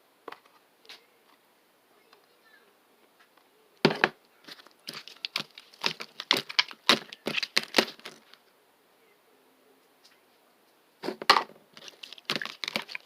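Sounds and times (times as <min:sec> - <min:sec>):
slime crackling pops: 0:04.9 - 0:08.2, 0:11.8 - 0:13.0.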